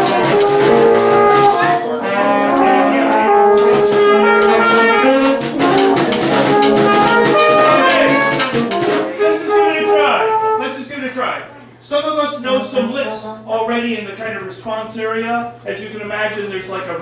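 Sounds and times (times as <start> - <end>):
street brass band playing: 0.0 - 10.9.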